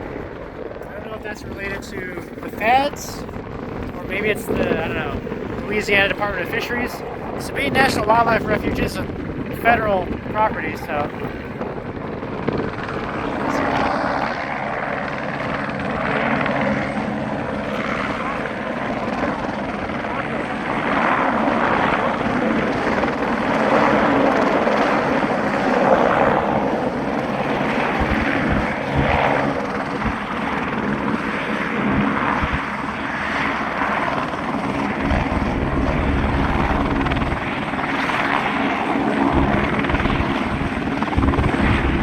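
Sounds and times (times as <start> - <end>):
heavy low rumble: 0.0 - 14.8, 24.7 - 30.9, 34.5 - 42.0
distant helicopter: 0.0 - 42.0.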